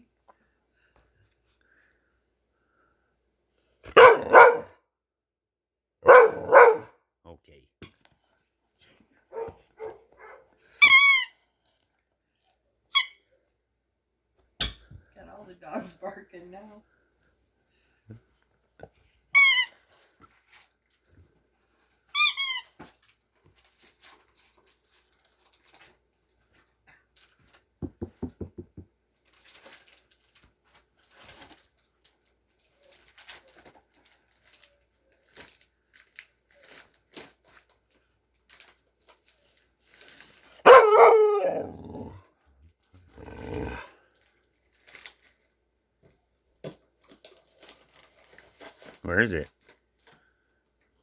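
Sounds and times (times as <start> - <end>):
dog high-pitched yelps: 3.9 - 4.7, 6.0 - 6.9, 9.3 - 11.3, 40.6 - 42.1
dog bark-howl: 3.9 - 4.8, 6.0 - 6.9, 40.6 - 42.2
dogs barking: 3.9 - 4.8, 6.0 - 6.9, 9.3 - 10.5, 40.6 - 41.9.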